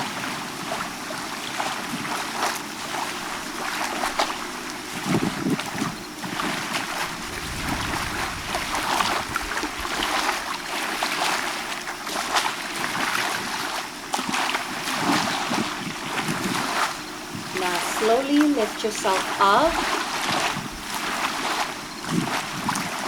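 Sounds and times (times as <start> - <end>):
water lapping and splashing: 0.0 - 23.0
wind on microphone: 3.2 - 11.3, 14.9 - 23.0.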